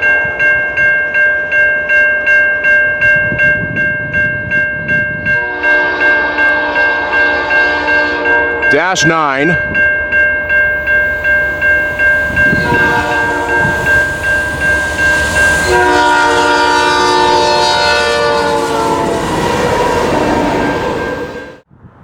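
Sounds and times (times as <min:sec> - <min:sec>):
level-crossing bell ringing: 0:00.0 - 0:17.6
locomotive air horn blast: 0:05.4 - 0:08.6, 0:12.4 - 0:21.6.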